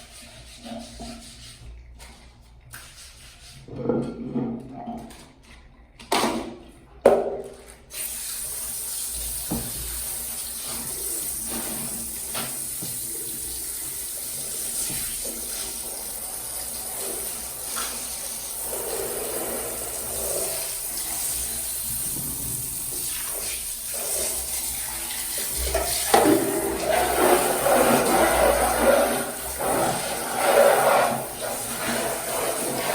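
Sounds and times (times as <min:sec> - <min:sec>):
tap water running into sink: 0:04.0 - 0:32.9.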